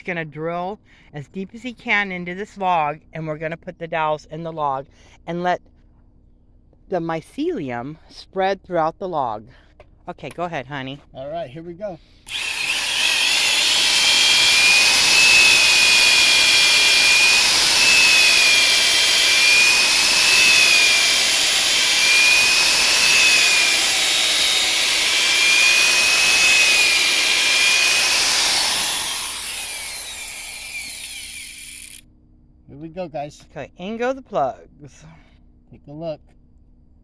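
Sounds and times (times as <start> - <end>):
power drill boring into log: 12.3 - 32.0.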